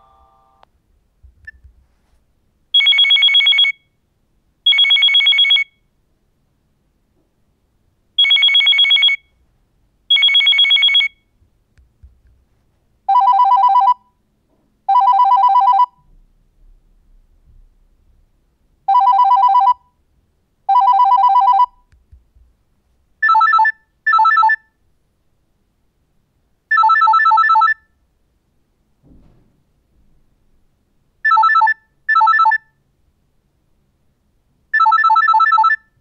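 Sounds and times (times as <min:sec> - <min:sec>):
electronic phone ringtone trilling: 0:00.0 - 0:00.6, 0:02.8 - 0:03.8, 0:08.2 - 0:09.2, 0:10.1 - 0:11.2, 0:13.1 - 0:14.0, 0:14.9 - 0:16.0, 0:18.9 - 0:19.8, 0:20.7 - 0:21.7, 0:31.3 - 0:32.7, 0:34.8 - 0:35.9.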